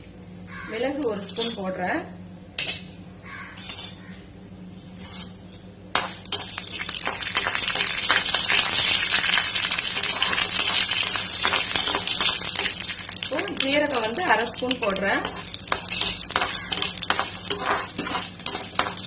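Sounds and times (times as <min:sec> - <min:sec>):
oil sizzling and crackling: 0:05.9 - 0:19.0
peppercorns clinking: 0:06.0 - 0:19.0.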